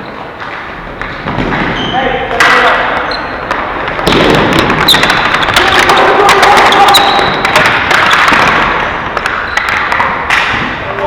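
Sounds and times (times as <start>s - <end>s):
hockey sticks and ball clacking: 0.0s - 11.0s
thuds: 1.0s - 1.8s, 2.4s - 6.0s.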